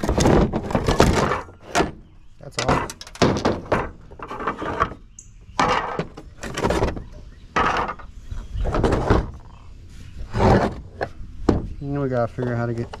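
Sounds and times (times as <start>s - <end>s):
pump parts clunking and clattering: 0.0s - 9.6s, 12.4s - 13.0s.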